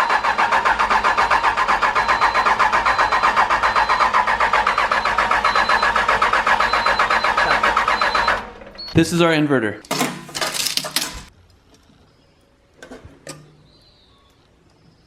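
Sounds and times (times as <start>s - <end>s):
diesel engine starter cranking: 0.0s - 9.0s.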